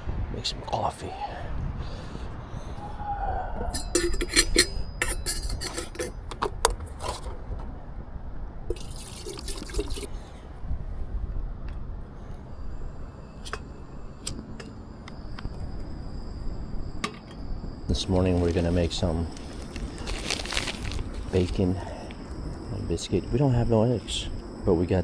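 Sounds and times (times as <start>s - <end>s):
cups or pots clinking: 3.7s - 7.3s, 8.7s - 10.1s
liquid pouring into container: 8.7s - 10.3s
hissing pour: 8.7s - 10.4s, 17.9s - 24.4s.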